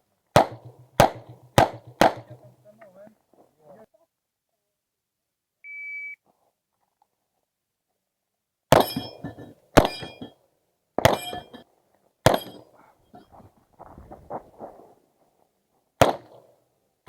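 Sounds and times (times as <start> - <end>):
pistol shots: 0.3 - 2.5, 8.7 - 9.2, 9.8 - 10.3, 11.0 - 11.6, 12.2 - 12.6, 16.0 - 16.5
short metallic ring: 8.8 - 10.4, 11.1 - 11.6, 12.3 - 13.3.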